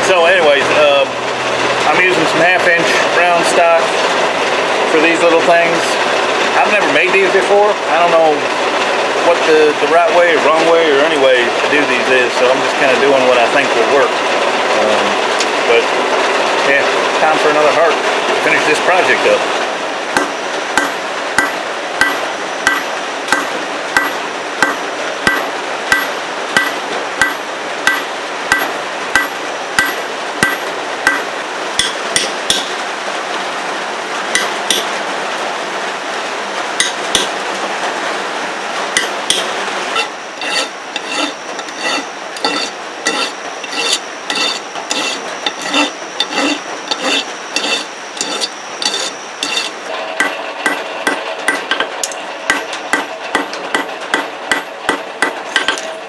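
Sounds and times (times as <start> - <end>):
hammer striking steel on anvil: 20.2 - 32.7, 34.4 - 34.9, 36.8 - 37.3, 39.0 - 55.9.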